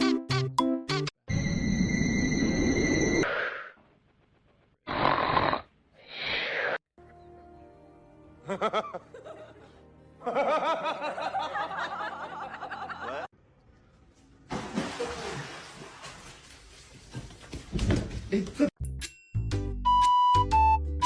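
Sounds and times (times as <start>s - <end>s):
background music: 7.0s - 13.3s, 18.8s - 21.0s
person laughing: 8.4s - 13.3s.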